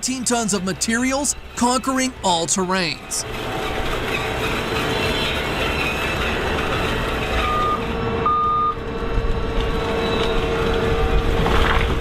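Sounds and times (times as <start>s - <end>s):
heavy engine running: 0.0s - 12.0s
reversing alarm beeps: 7.4s - 8.8s.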